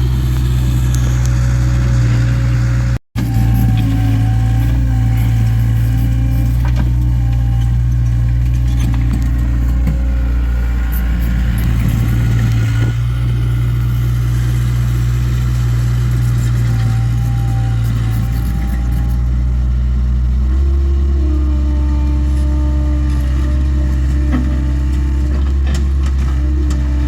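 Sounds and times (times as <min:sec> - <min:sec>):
diesel engine running: 0:00.0 - 0:27.0.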